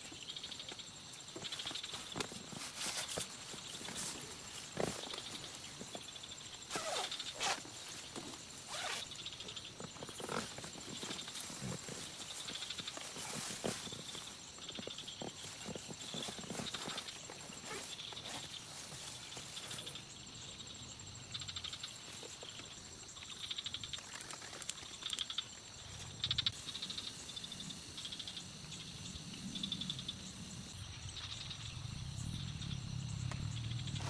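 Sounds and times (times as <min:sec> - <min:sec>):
high insect drone: 0:00.0 - 0:34.0
frogs calling in pulsed trills: 0:21.3 - 0:24.1
low rumble: 0:31.4 - 0:34.0.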